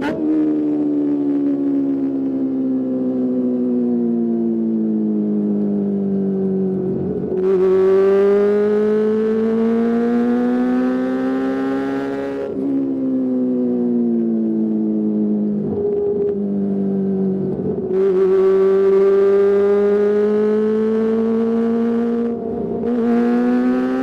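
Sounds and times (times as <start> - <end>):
motorcycle engine revving: 6.7 - 13.6, 17.0 - 24.0.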